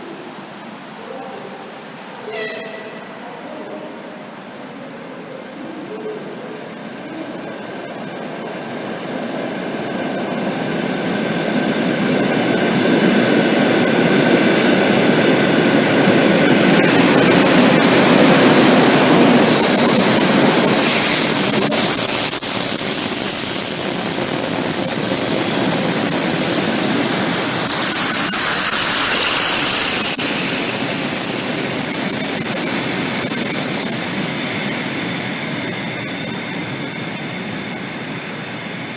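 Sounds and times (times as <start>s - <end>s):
electric train rumble: 0.0s - 38.9s
high wheel squeal: 2.3s - 3.1s, 8.7s - 38.9s.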